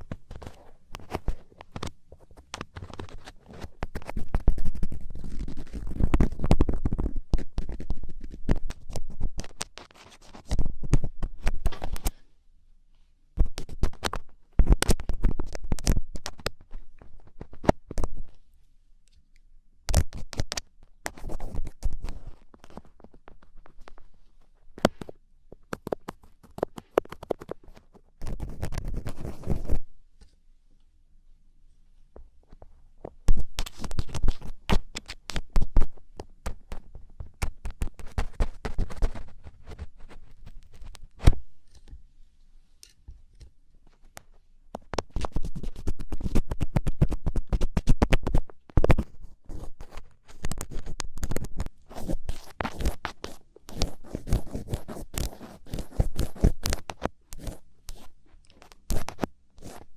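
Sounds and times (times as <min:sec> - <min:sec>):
ear pick scratching in ear: 0:00.0 - 0:12.2, 0:20.0 - 0:23.9, 0:25.8 - 0:29.8, 0:33.4 - 0:41.4, 0:44.9 - 0:59.9.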